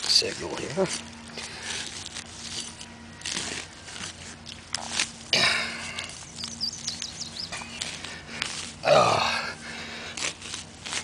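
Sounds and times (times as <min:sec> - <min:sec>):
digging tool crunching into soil: 0:10.0 - 0:11.0.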